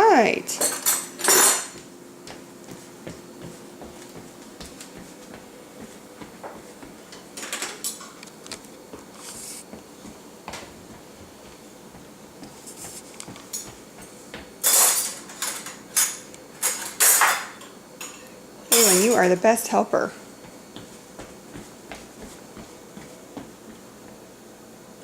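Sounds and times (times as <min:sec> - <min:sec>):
dishes and silverware clattering: 0:00.5 - 0:01.8, 0:14.6 - 0:19.3.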